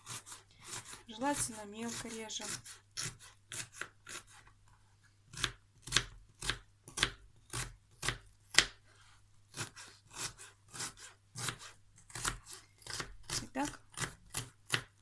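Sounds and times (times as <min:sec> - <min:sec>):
knife chopping onion: 0:00.0 - 0:04.5, 0:05.3 - 0:08.8, 0:09.5 - 0:15.0.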